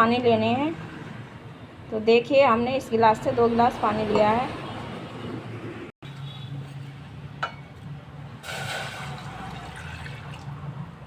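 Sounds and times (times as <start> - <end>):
water pouring into a pot: 8.4 - 10.6.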